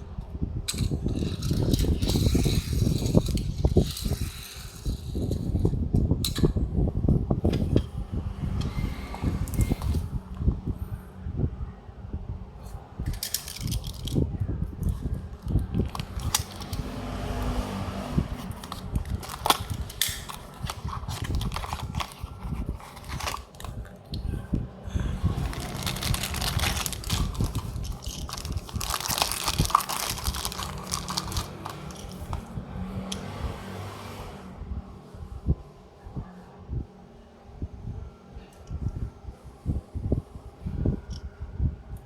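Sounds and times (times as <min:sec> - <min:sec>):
packaging crinkling and rustling: 0:13.2 - 0:14.2, 0:14.8 - 0:16.9, 0:18.4 - 0:24.0, 0:25.2 - 0:32.5.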